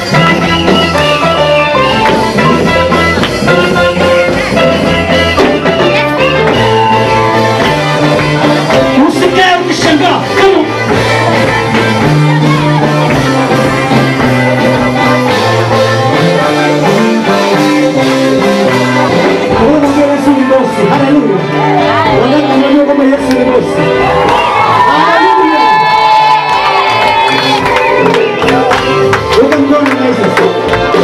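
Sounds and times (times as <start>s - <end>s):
bass line: 0.0s - 31.0s
guitar: 0.0s - 31.0s
singing voices: 19.5s - 30.6s.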